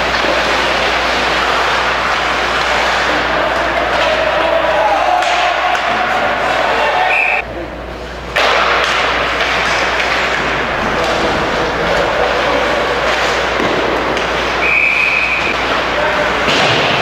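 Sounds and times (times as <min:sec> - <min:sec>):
ice hockey play on rink: 0:00.0 - 0:17.0
referee whistle blast: 0:07.0 - 0:07.4, 0:14.6 - 0:15.6.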